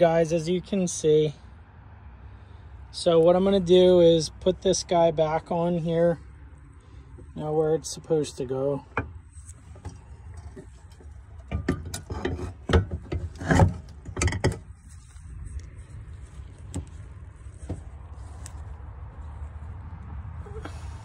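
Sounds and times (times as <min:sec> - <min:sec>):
metal latch clicks and knocks: 0:09.8 - 0:14.7.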